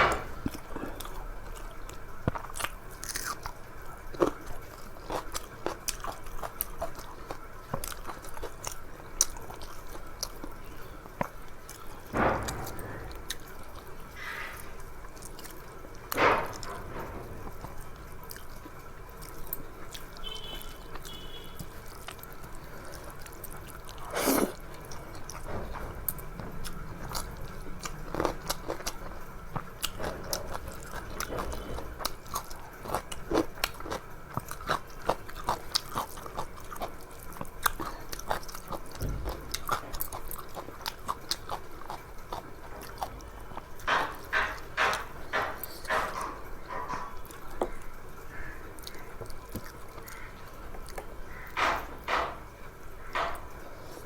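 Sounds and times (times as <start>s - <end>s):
person chewing and lip-smacking: 26.1s - 46.2s.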